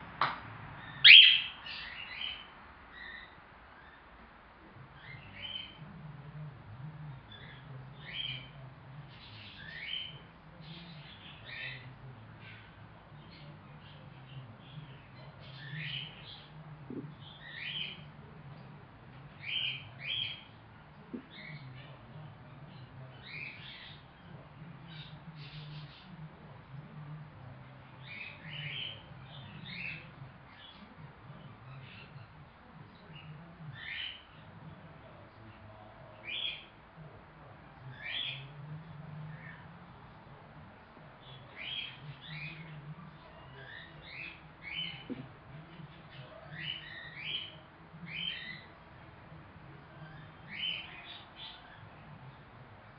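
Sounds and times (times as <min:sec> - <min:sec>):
steady low hum: 0:00.0 - 0:52.9
cockatiel chirping: 0:00.9 - 0:02.4.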